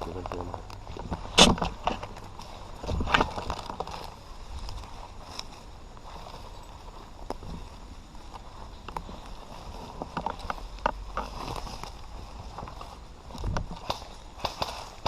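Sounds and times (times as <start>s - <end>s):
low wind rumble on microphone: 0.0s - 15.0s.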